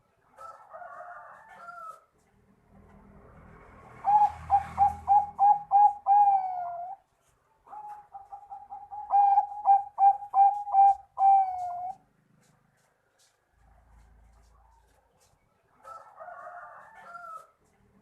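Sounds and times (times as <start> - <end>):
dove cooing: 4.0 - 7.0, 7.6 - 12.1.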